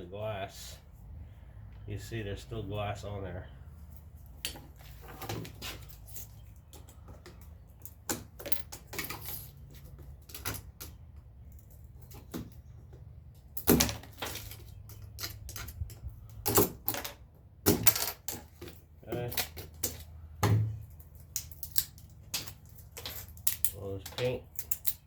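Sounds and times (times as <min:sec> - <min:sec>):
tools prying and tapping wood: 0:06.6 - 0:25.0.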